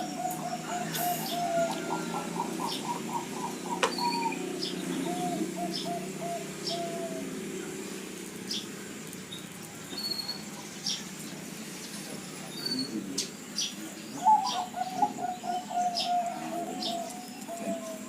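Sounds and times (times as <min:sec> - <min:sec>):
doves cooing: 0:00.0 - 0:18.0
small birds chirping: 0:00.0 - 0:18.0.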